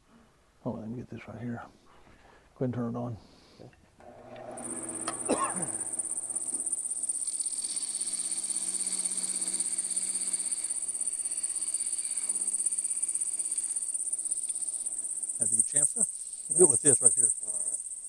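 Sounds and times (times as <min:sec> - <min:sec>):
wood lathe whine: 0:04.0 - 0:18.0
tool cutting wood: 0:04.2 - 0:15.6.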